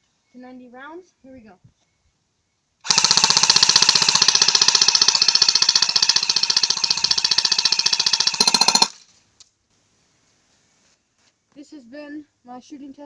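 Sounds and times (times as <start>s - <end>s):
airsoft gun firing full-auto: 2.8s - 9.0s.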